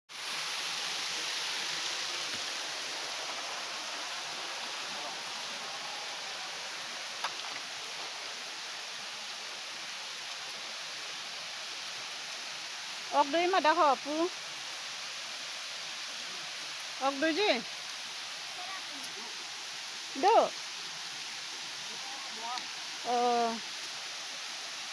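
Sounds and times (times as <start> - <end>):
waterfall rushing: 0.1 - 24.9.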